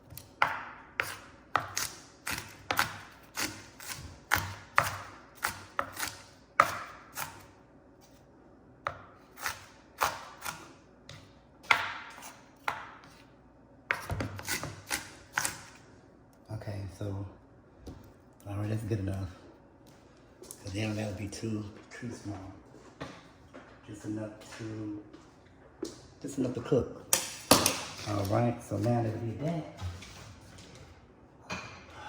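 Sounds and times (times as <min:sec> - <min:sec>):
knife chopping on cutting board: 0:00.1 - 0:07.5, 0:08.8 - 0:13.3, 0:13.9 - 0:15.8.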